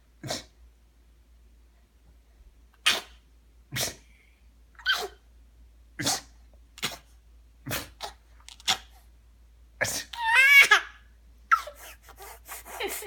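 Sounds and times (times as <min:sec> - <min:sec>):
pet sneezing: 0:00.2 - 0:00.6, 0:02.8 - 0:04.1, 0:04.8 - 0:05.2, 0:06.0 - 0:09.0, 0:09.8 - 0:10.2.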